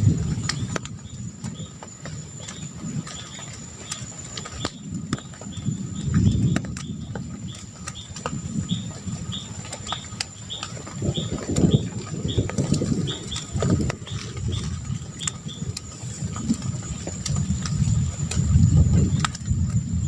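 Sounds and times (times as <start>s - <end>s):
low rumbling noise: 0.0s - 20.0s
bird chirping: 0.4s - 16.0s.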